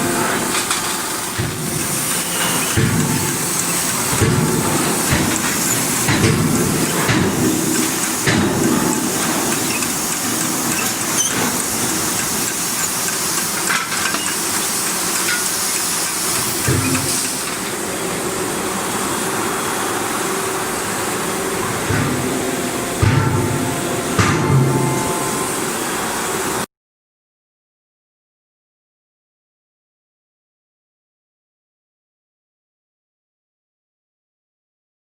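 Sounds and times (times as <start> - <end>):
steady hissing: 1.1 - 17.8.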